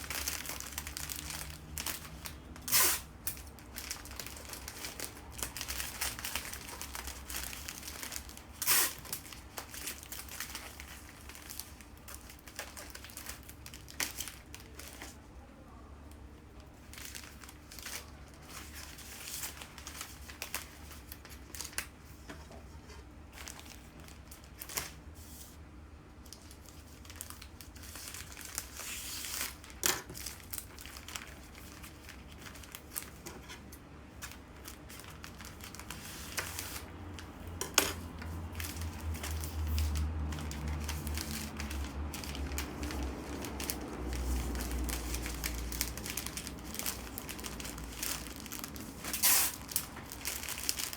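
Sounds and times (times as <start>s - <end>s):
wrapping paper crinkling: 0.0s - 15.3s, 16.5s - 25.6s, 26.2s - 50.9s.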